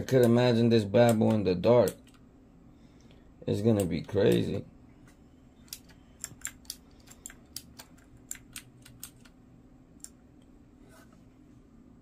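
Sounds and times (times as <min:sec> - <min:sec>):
mechanical keyboard keys clicking: 0:05.7 - 0:09.4.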